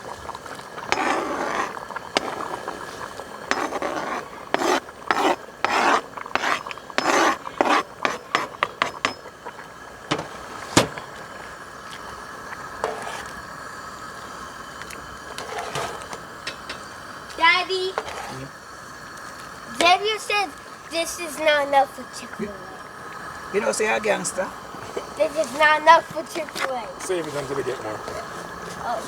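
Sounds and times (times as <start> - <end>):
utensil scraping cookware: 0.7 - 11.4, 12.8 - 13.4, 15.3 - 16.8, 17.9 - 18.5.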